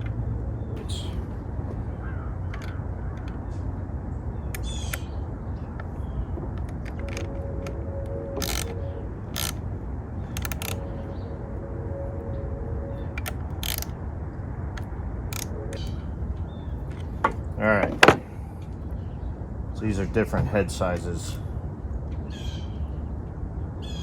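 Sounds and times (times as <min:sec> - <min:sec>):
low rumble: 0:00.0 - 0:24.0
ratchet wrench clicking: 0:08.4 - 0:08.7, 0:09.4 - 0:09.6, 0:10.4 - 0:10.8, 0:13.2 - 0:13.9
metal tools clinking: 0:08.4 - 0:09.6, 0:10.4 - 0:10.9.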